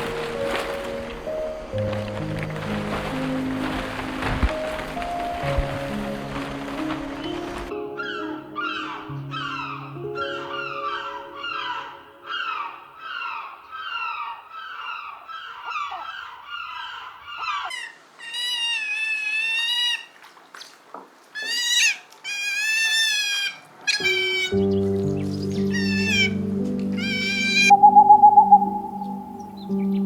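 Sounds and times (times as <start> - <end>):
music: 0.0 - 12.8, 24.0 - 30.0
animal calls: 7.2 - 20.8, 21.4 - 30.0
high wavering animal cries: 8.0 - 20.1, 21.4 - 24.8, 25.6 - 29.9.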